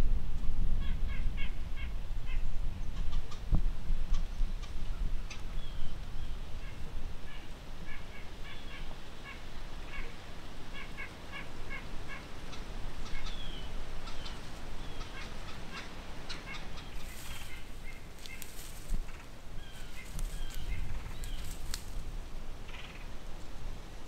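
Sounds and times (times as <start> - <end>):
birds calling: 4.6 - 22.0.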